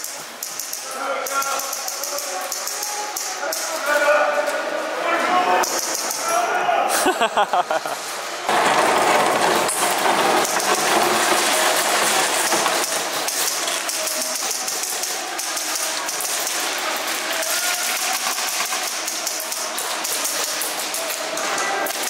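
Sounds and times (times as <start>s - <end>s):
airsoft guns firing: 12.5s - 21.1s.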